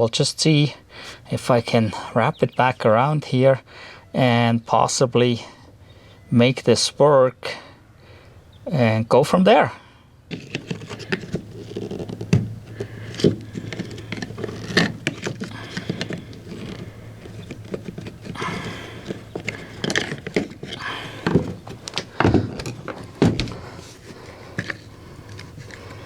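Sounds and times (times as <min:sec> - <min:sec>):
brief rustles: 0:10.3 - 0:26.0
hands clicking and tapping parts: 0:10.3 - 0:26.0.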